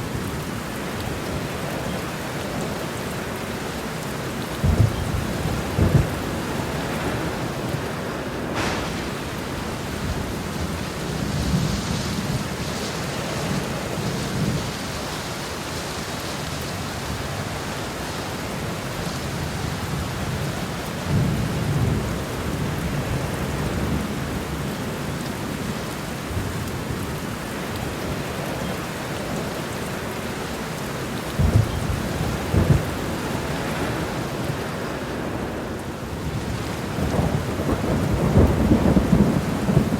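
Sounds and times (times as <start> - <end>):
heavy rain falling: 0.0 - 39.9
thunder rumbling: 4.0 - 15.6, 31.2 - 39.9
sharp thunder crack: 4.6 - 7.5, 8.5 - 12.5, 31.4 - 34.1.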